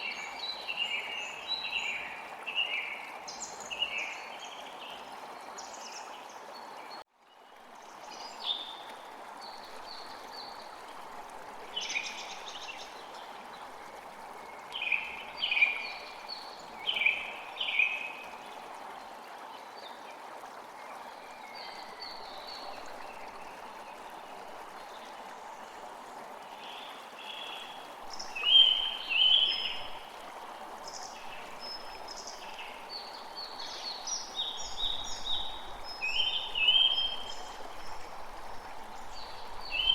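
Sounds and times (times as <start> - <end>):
songbirds chirping: 20.9 - 39.9.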